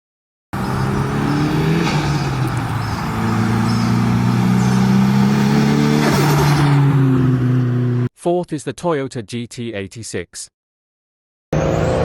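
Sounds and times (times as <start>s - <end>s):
turbocharged engine running: 0.6s - 8.1s.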